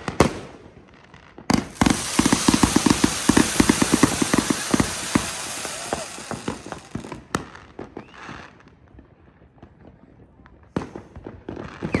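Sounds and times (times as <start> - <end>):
firework cracks and crackling: 0.0 - 8.6.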